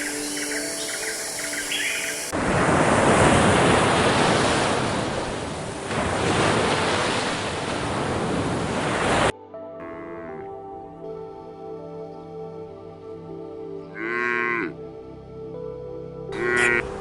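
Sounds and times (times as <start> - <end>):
birds chirping: 0.0 - 2.3
soft music: 0.0 - 2.4, 9.3 - 17.0
ocean waves rushing: 0.0 - 9.3.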